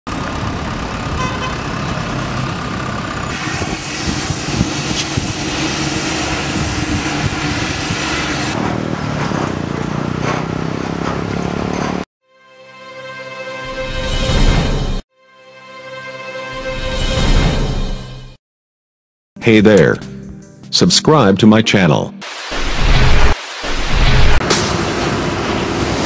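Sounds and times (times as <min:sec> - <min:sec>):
road traffic passing: 0:00.1 - 0:12.1, 0:24.3 - 0:26.0.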